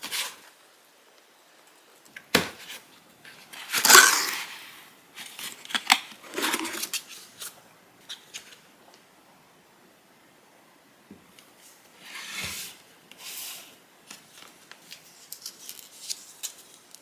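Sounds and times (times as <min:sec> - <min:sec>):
paper packaging rustling: 0:05.2 - 0:08.6, 0:14.2 - 0:17.0.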